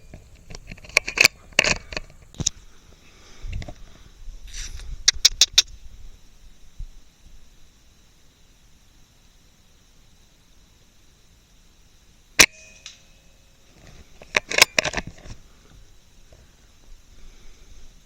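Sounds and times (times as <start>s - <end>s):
sharp clicks and knocks: 5.0s - 5.7s.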